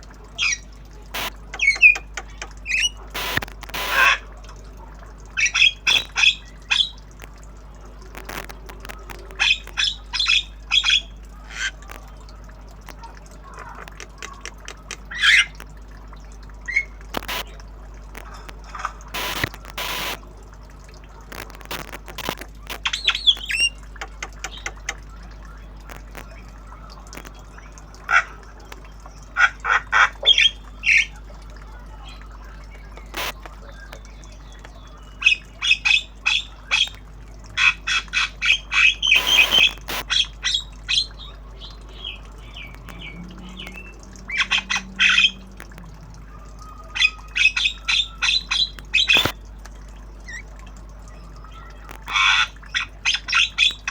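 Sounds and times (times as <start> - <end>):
sharp clicks: 0.4 - 4.6, 5.9 - 10.3, 11.6 - 15.8, 16.7 - 20.2, 21.2 - 29.2, 32.9 - 34.9, 39.0 - 46.2, 48.5 - 50.4
myna bird calling: 21.7 - 49.4, 51.1 - 53.9.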